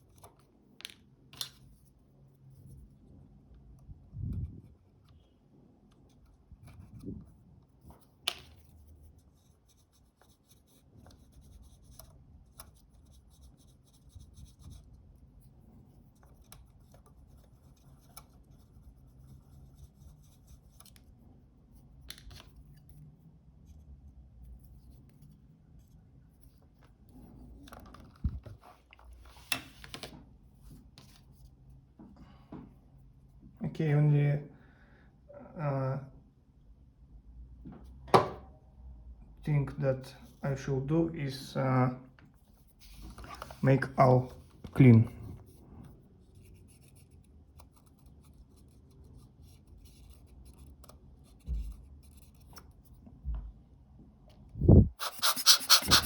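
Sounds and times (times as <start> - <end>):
small tools scratching: 55.0 - 56.0.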